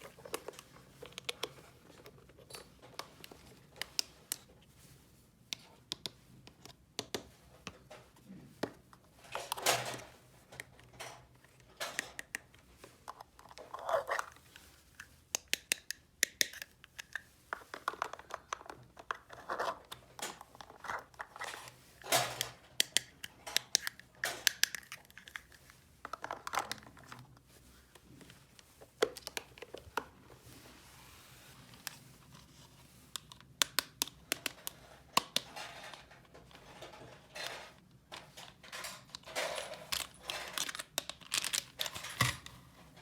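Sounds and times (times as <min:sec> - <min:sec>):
plastic toy pieces clicking: 0:22.4 - 0:25.2, 0:39.1 - 0:42.0
packaging rustling and tearing: 0:39.9 - 0:42.5.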